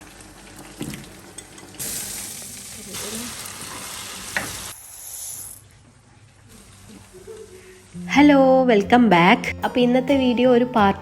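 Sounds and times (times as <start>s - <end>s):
food sizzling in a pan: 0.0s - 8.3s.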